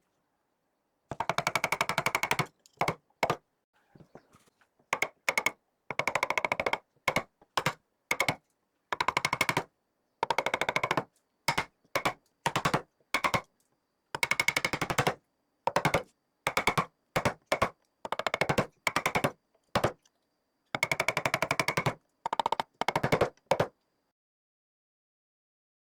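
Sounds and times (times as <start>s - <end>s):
tool tapping on wood: 1.1s - 3.4s, 5.0s - 8.4s, 9.0s - 13.5s, 14.2s - 20.1s, 20.8s - 23.7s.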